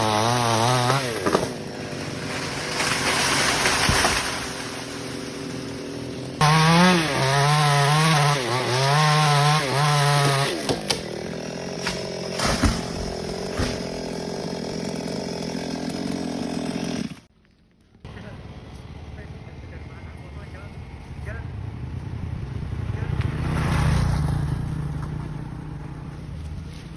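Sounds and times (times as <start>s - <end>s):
chainsaw cutting branches: 0.0s - 17.3s.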